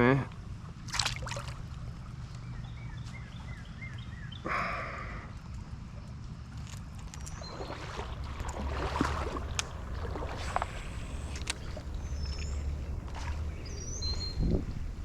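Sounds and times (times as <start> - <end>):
water sloshing around legs: 7.1 - 15.0
steady low rumble: 7.4 - 15.0
sharp clicks: 9.5 - 13.2.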